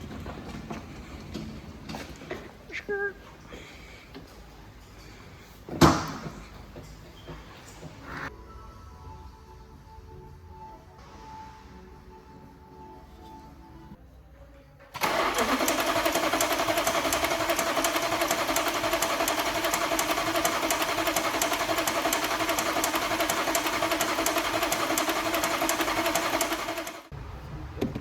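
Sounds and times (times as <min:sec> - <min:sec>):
machine running with fast ticking: 0:15.0 - 0:27.1.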